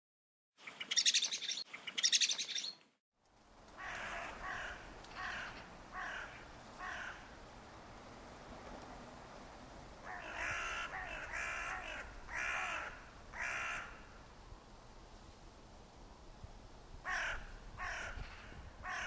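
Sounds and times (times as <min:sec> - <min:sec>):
bird rapid high chirping: 0:00.6 - 0:02.8
steady background hiss: 0:03.2 - 0:18.9.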